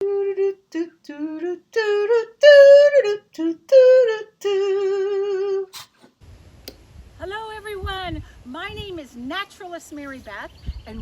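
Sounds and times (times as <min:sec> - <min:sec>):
woman singing: 0:00.0 - 0:05.7.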